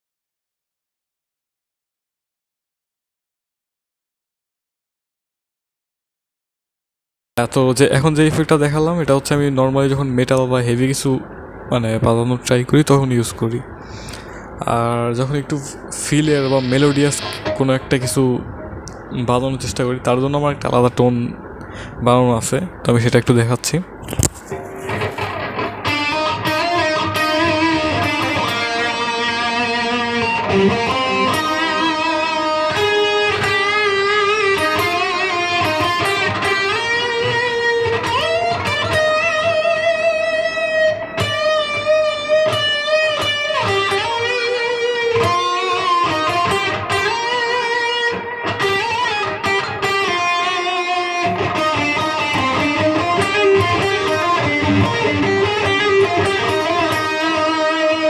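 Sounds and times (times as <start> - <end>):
electric guitar lead melody: 16.2 - 19.2, 24.0 - 58.0.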